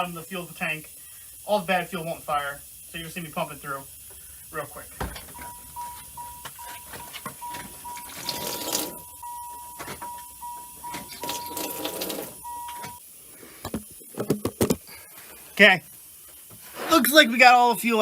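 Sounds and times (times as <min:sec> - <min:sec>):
fuel hissing: 0:00.0 - 0:18.0
electronic warning chime beeping: 0:05.3 - 0:13.0.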